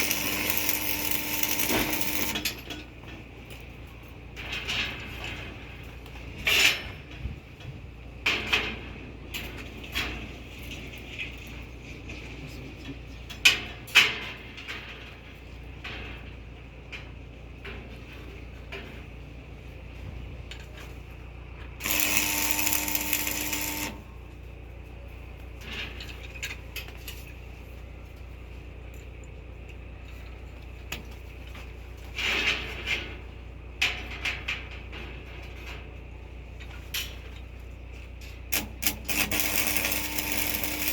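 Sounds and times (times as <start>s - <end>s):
power tool running: 0.0s - 2.5s, 21.8s - 24.1s, 38.6s - 40.9s
steady low hum: 17.4s - 40.9s.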